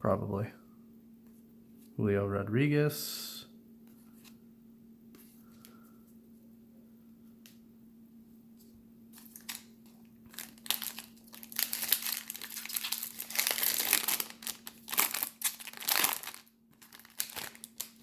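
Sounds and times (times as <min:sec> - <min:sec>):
foil wrapper crinkling: 0:09.2 - 0:18.0.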